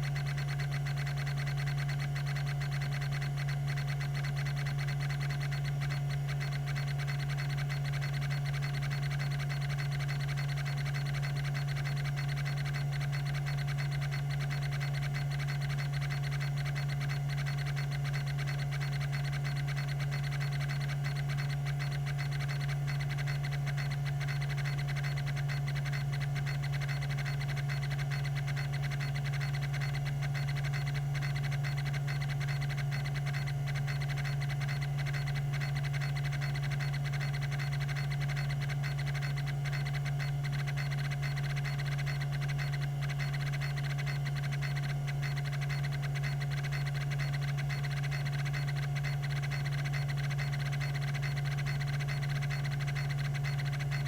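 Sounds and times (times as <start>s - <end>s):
hard drive humming: 0.0s - 54.0s.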